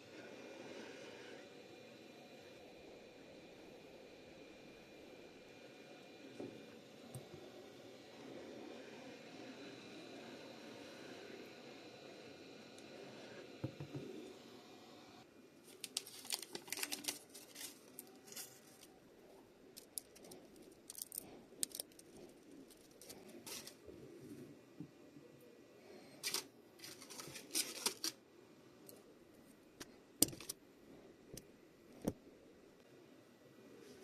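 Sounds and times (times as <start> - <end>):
scraping and rustling handling: 15.6 - 19.0, 19.7 - 24.4, 26.2 - 28.2.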